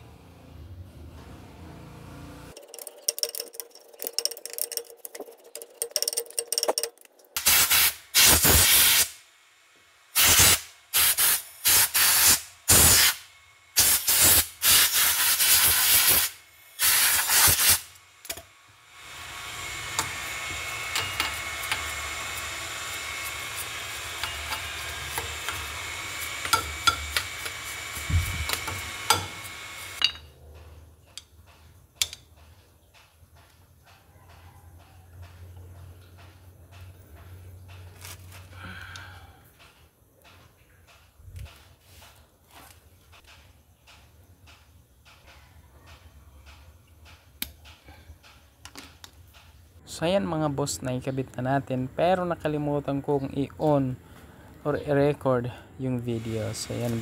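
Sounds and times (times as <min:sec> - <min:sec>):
spray can hissing: 0:07.4 - 0:09.2, 0:10.2 - 0:13.2, 0:13.8 - 0:17.9.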